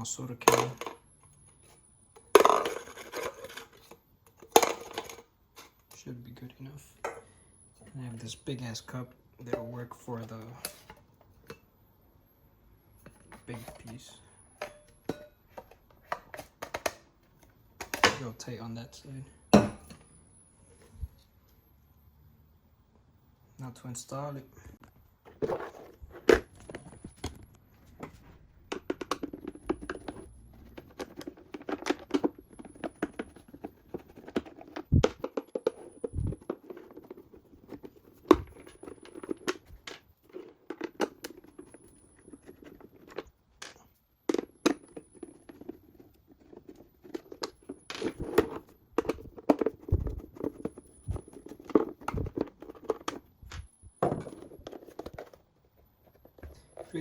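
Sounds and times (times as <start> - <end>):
plastic scraping and rubbing: 25.2 - 43.4, 44.3 - 57.0.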